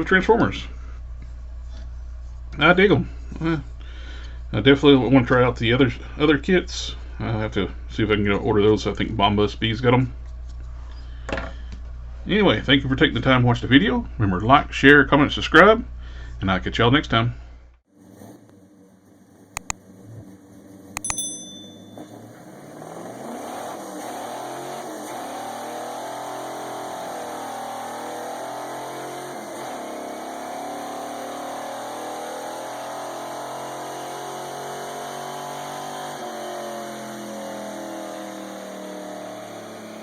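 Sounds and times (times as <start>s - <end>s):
car engine running: 18.0s - 32.0s
brief ringing tone: 21.0s - 22.4s.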